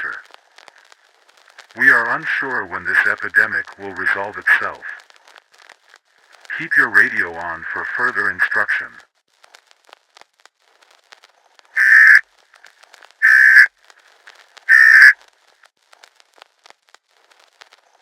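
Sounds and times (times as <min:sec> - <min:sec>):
faint crackling clicks: 0:00.0 - 0:18.0
buzzy digital data tones: 0:11.8 - 0:12.2, 0:13.2 - 0:13.7, 0:14.7 - 0:15.2.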